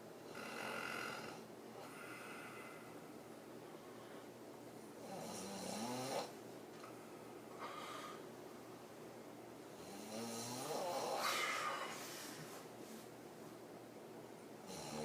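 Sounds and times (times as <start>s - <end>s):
woman snoring: 0.3s - 2.7s, 5.0s - 6.3s, 9.8s - 12.0s, 14.7s - 15.0s
soft breath: 1.8s - 4.5s, 6.9s - 8.3s, 11.2s - 13.1s.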